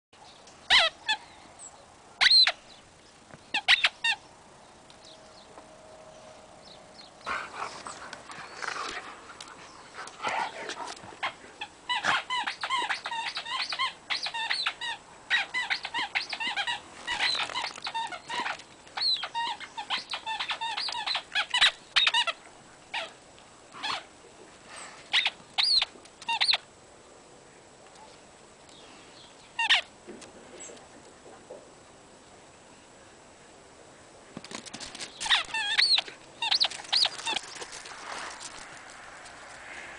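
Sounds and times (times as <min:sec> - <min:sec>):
squeaky toy squeaking: 0:00.7 - 0:01.0, 0:02.2 - 0:02.5, 0:03.6 - 0:04.2, 0:11.9 - 0:23.1, 0:25.1 - 0:26.6, 0:29.6 - 0:29.9, 0:35.2 - 0:37.6.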